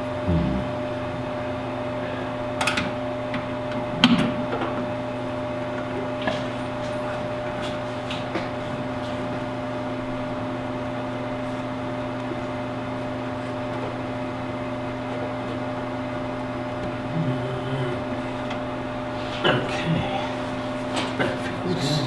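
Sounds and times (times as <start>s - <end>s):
machine hum: 0.0s - 22.0s
faint low murmur: 16.8s - 18.6s.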